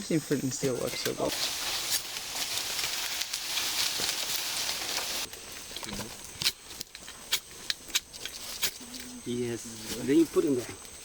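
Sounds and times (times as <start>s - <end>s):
fire crackling: 0.5s - 11.0s
fire hissing: 1.2s - 7.8s.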